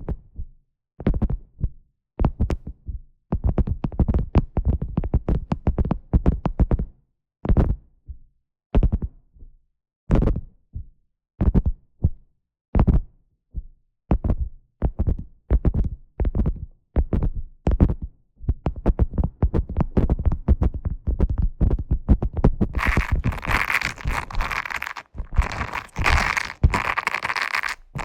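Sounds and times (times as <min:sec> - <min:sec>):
brush scratching on microphone: 0:22.8 - 0:28.0
wax food wrap crinkling: 0:22.8 - 0:28.0.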